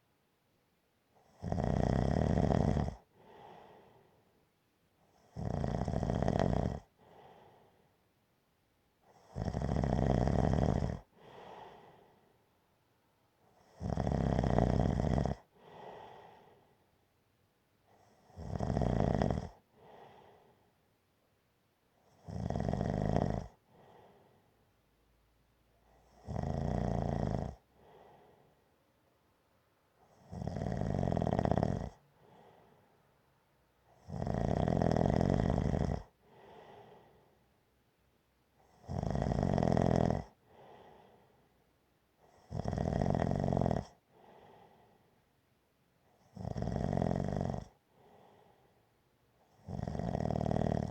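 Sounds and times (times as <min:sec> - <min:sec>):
gentle snoring: 0:01.2 - 0:04.2, 0:05.0 - 0:07.9, 0:09.0 - 0:12.3, 0:13.5 - 0:16.8, 0:17.9 - 0:20.7, 0:22.0 - 0:24.5, 0:25.8 - 0:28.6, 0:30.0 - 0:32.8, 0:33.9 - 0:37.4, 0:38.6 - 0:41.5, 0:42.2 - 0:45.2, 0:46.1 - 0:48.8, 0:49.4 - 0:50.9
faint breath sound: 0:03.0 - 0:05.3, 0:06.8 - 0:08.2, 0:11.0 - 0:12.7, 0:15.4 - 0:17.1, 0:19.6 - 0:20.9, 0:23.6 - 0:24.7, 0:27.6 - 0:28.8, 0:31.9 - 0:33.2, 0:36.0 - 0:37.6, 0:40.2 - 0:42.5, 0:43.9 - 0:45.4, 0:47.6 - 0:49.6.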